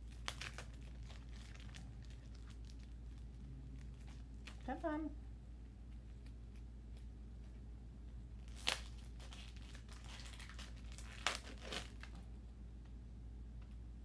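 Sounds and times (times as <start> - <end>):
plastic wrapper crinkling and tearing: 0.0 - 4.7, 8.4 - 12.2.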